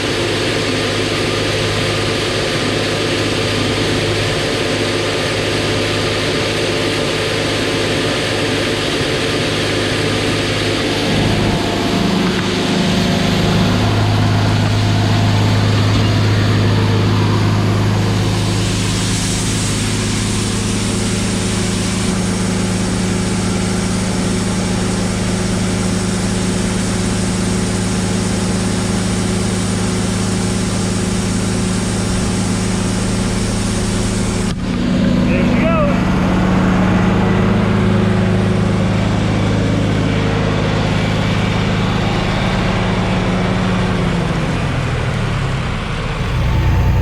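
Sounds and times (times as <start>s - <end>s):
farm machinery engine hum: 0.0s - 47.0s
machinery hiss: 7.0s - 34.7s, 46.1s - 47.0s.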